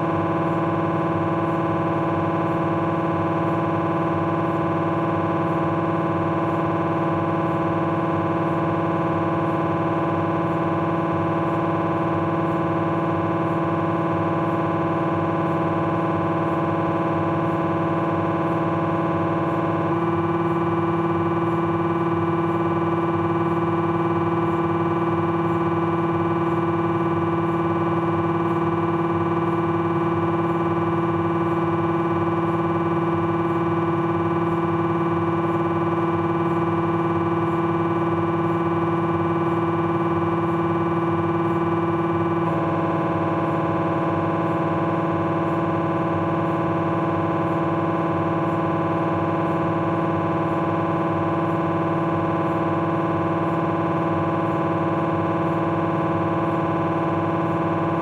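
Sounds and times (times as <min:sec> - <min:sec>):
mri scanner buzzing drone: 0:00.0 - 0:58.0.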